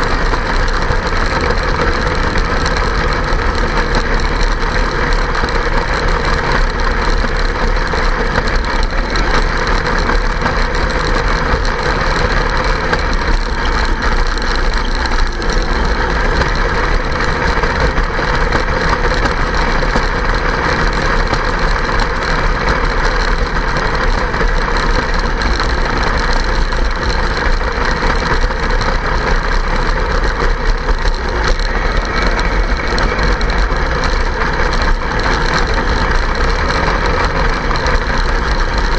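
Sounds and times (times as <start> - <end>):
clonking and rattling: 0.0 - 38.9.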